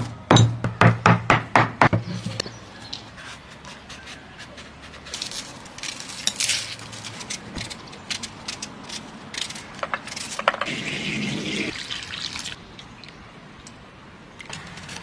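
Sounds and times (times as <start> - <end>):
soft scraping and rustling: 2.1 - 10.5.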